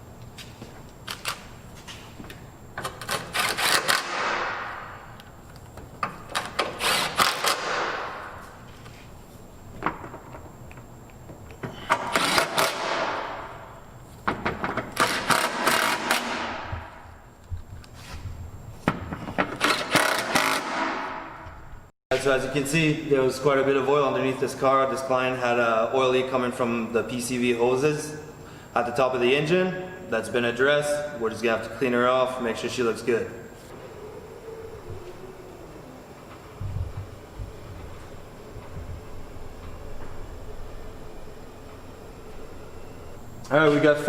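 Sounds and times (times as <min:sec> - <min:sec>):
power tool driving bolts: 0:02.8 - 0:04.8, 0:06.0 - 0:08.0, 0:11.9 - 0:13.2, 0:14.7 - 0:16.7, 0:19.4 - 0:21.0.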